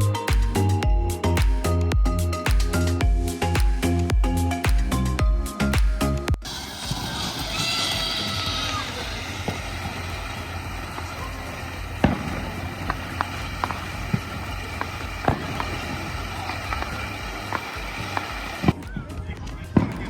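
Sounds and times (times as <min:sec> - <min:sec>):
steady hiss: 0:06.4 - 0:18.7
fireworks popping and cracking: 0:06.4 - 0:20.0.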